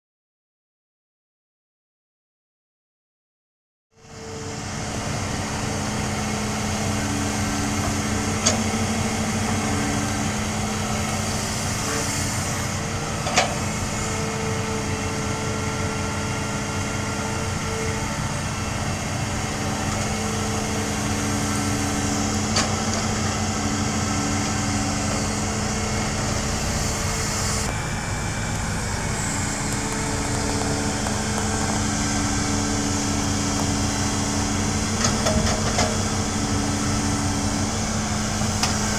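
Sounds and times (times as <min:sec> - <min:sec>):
excavator diesel engine running: 0:04.0 - 0:38.9
high whining tones: 0:19.5 - 0:35.3.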